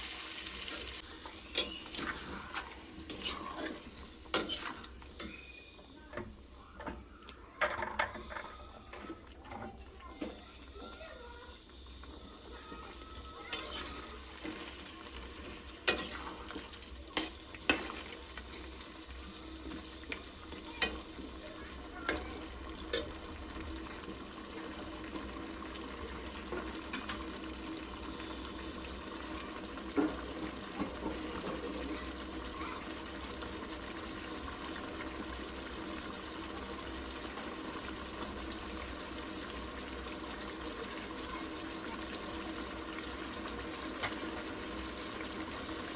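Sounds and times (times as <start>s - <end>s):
curry sizzling in a pan: 0.0s - 45.9s
spoon clinking against pan: 1.5s - 2.2s, 4.3s - 5.8s.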